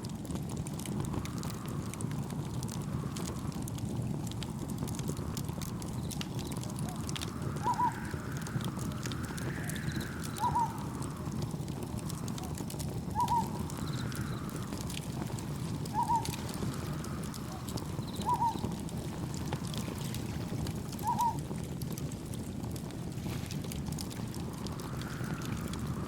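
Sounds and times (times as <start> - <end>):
campfire crackling: 0.0 - 26.0
gentle waves: 4.4 - 21.4, 23.0 - 26.0
wind rushing: 4.5 - 21.0, 22.5 - 26.0
faint insect chirps: 7.2 - 11.4, 13.1 - 19.4.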